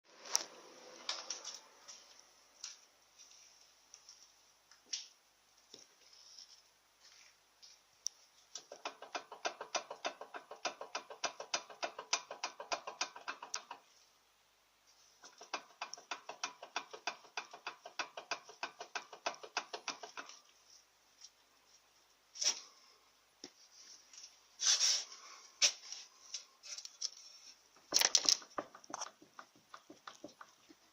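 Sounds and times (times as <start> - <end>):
rapid metallic clicking: 8.5 - 13.8, 15.2 - 20.4.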